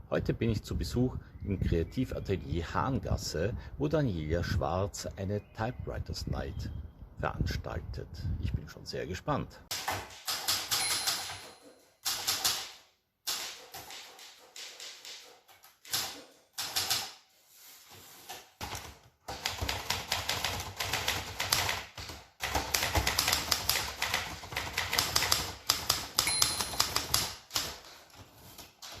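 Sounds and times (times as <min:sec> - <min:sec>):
manual typewriters clacking: 0:09.7 - 0:17.1, 0:18.6 - 0:29.0
short high ringing tone: 0:26.2 - 0:26.8.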